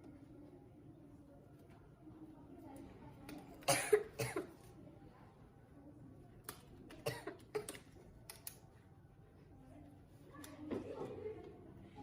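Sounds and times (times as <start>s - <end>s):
quiet coughs: 3.6s - 4.7s, 6.9s - 8.0s.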